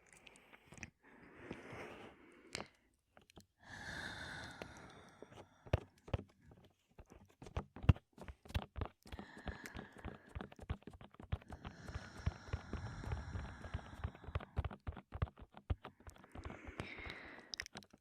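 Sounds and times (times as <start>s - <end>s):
taps on microphone: 7.4s - 16.9s
heavy breath into microphone: 11.5s - 14.6s, 16.2s - 17.6s.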